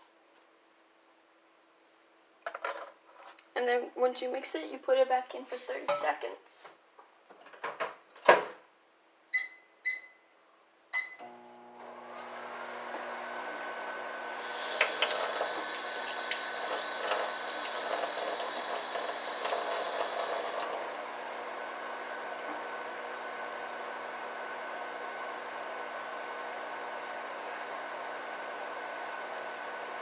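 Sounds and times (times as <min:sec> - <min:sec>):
keypad beeps: 0:09.3 - 0:10.2
microwave oven humming: 0:11.0 - 0:30.0.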